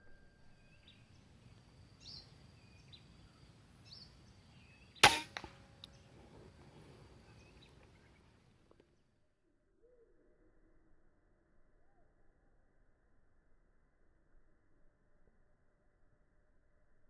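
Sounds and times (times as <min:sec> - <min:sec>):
insect high tone: 0:00.0 - 0:05.4
bird chirps: 0:00.0 - 0:06.2
air rifle shot: 0:05.0 - 0:05.9.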